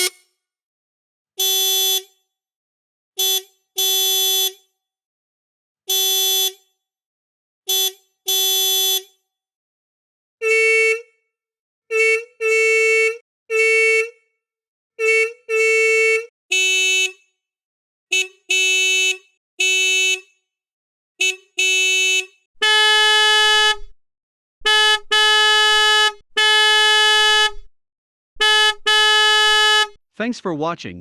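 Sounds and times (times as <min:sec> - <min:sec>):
higher-pitched car horn honking: 0:00.0 - 0:00.2, 0:10.4 - 0:11.0, 0:11.9 - 0:14.1, 0:15.0 - 0:17.2, 0:18.1 - 0:20.3, 0:21.2 - 0:23.9, 0:24.6 - 0:27.6, 0:28.4 - 0:30.0
lower-pitched car horn honking: 0:00.0 - 0:00.2, 0:11.9 - 0:14.1, 0:15.0 - 0:17.2, 0:18.1 - 0:20.2, 0:21.2 - 0:23.9, 0:24.6 - 0:27.6, 0:28.4 - 0:30.0.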